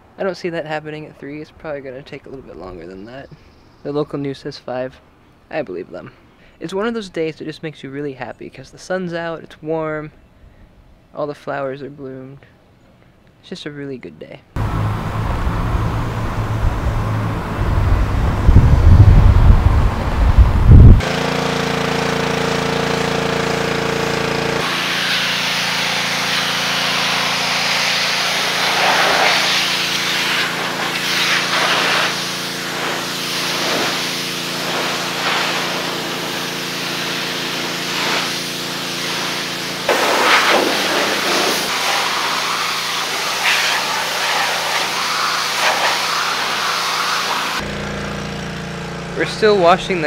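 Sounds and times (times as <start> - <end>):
water spraying onto car: 24.6 - 47.6.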